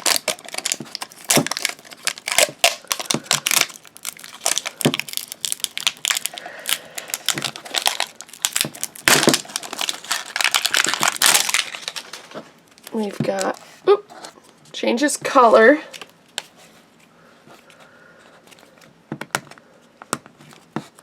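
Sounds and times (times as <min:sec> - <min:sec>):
plastic wrappers crinkling and tearing: 0:00.0 - 0:13.9.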